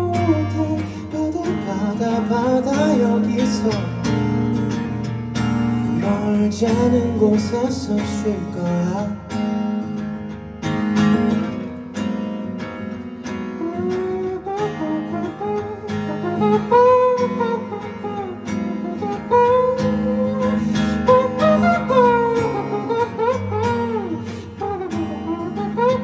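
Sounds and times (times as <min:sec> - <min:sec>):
acoustic guitar strumming: 0:00.0 - 0:26.0
wavering melody line: 0:13.6 - 0:26.0.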